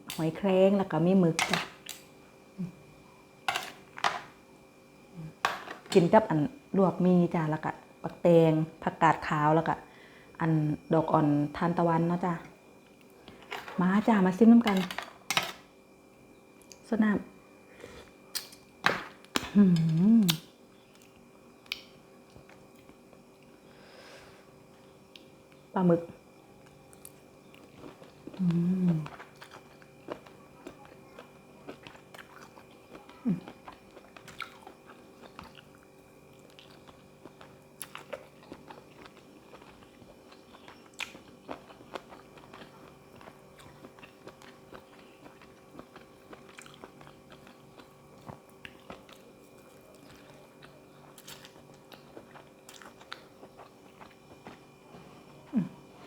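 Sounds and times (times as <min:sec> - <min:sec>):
faint steady hum: 0:00.0 - 0:56.0
person humming: 0:19.4 - 0:20.4, 0:28.4 - 0:29.1, 0:33.1 - 0:33.5, 0:55.4 - 0:56.0
chewing and crunching: 0:26.6 - 0:56.0.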